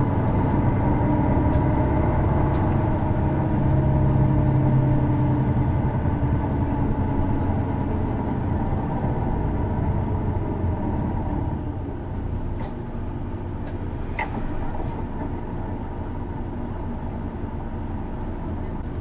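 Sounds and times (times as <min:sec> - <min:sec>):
bus diesel engine rumble: 0:00.0 - 0:19.0.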